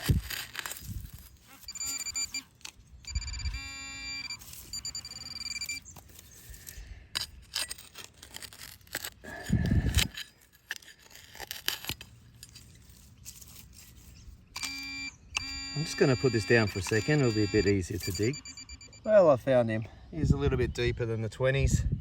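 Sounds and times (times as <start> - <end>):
digging in soil: 0.0 - 19.6
metal detector beeping: 0.2 - 6.7, 14.5 - 19.5.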